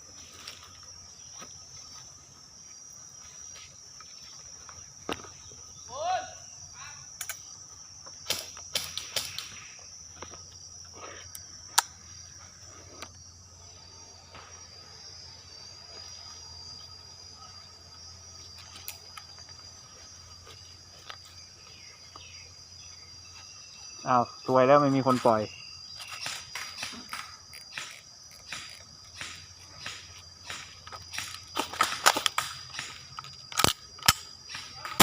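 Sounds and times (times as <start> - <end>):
insects droning: 0.0 - 35.0
sharp clicks: 26.1 - 35.0.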